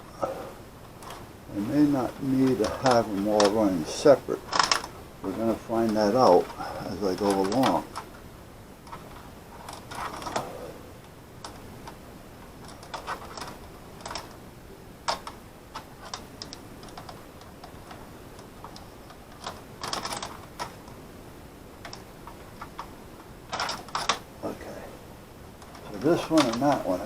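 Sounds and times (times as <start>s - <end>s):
hands handling wires and plastic: 0.8s - 14.4s, 15.0s - 21.0s, 21.7s - 24.3s, 25.5s - 27.0s.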